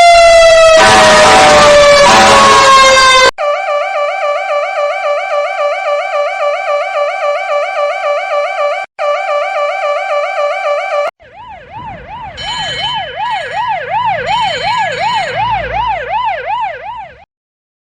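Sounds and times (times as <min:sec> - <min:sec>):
fast-warbling siren: 0:00.0 - 0:17.3
siren sweeping up and down: 0:00.0 - 0:17.3
horn blasts: 0:00.6 - 0:03.3, 0:12.4 - 0:13.7.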